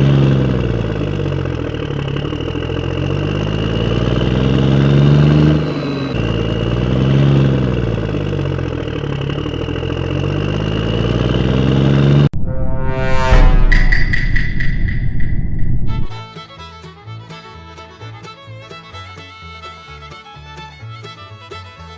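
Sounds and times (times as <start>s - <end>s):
engine revving: 0.0s - 14.6s.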